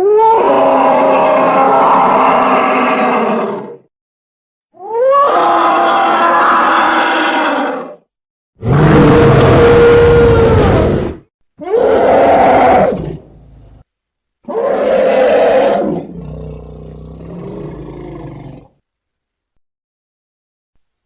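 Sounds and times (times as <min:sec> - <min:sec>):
dinosaur roars: 0:00.0 - 0:03.8, 0:04.8 - 0:08.0, 0:08.6 - 0:13.8, 0:14.4 - 0:18.7.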